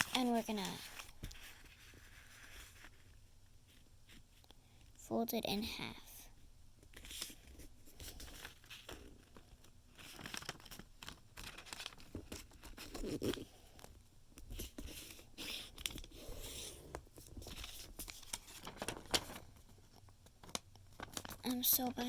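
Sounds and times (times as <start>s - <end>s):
paper rustling and crinkling: 0.0s - 4.3s, 6.9s - 22.0s
paper ticking against itself: 17.2s - 22.0s.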